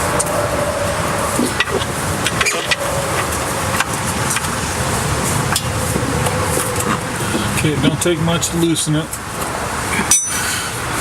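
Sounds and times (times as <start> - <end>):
vehicle hum: 0.0 - 11.0.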